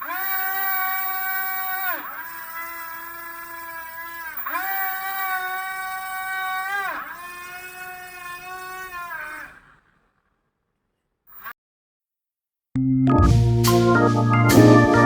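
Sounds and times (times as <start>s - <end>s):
electric motors whining: 0.0s - 9.7s.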